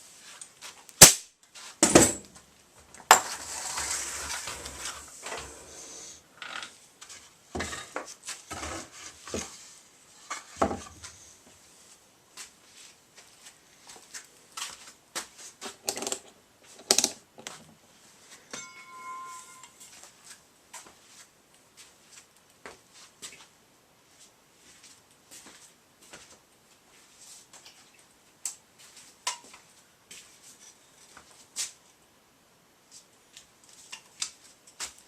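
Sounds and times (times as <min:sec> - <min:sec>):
rough scraping: 0:03.1 - 0:06.2.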